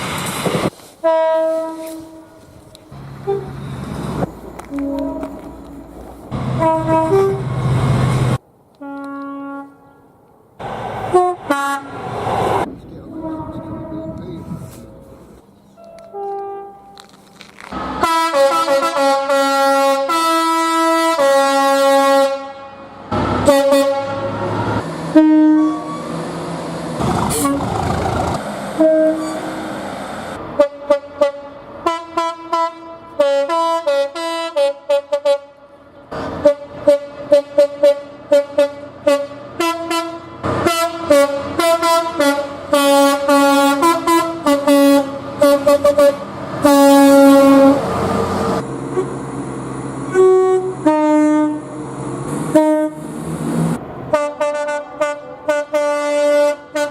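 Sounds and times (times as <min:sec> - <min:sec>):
train rumbling: 0:00.0 - 0:08.8, 0:10.1 - 0:21.2, 0:22.9 - 0:33.9, 0:35.8 - 0:56.9
multi-tone train horn blasts: 0:01.0 - 0:02.4, 0:03.2 - 0:03.6, 0:04.6 - 0:05.9, 0:06.5 - 0:07.6, 0:08.8 - 0:10.1, 0:11.1 - 0:12.0, 0:13.0 - 0:14.7, 0:15.8 - 0:17.1, 0:17.9 - 0:26.1, 0:27.4 - 0:27.6, 0:28.8 - 0:29.6, 0:30.5 - 0:35.8, 0:36.4 - 0:49.1, 0:50.1 - 0:51.8, 0:52.5 - 0:53.1, 0:54.1 - 0:56.9.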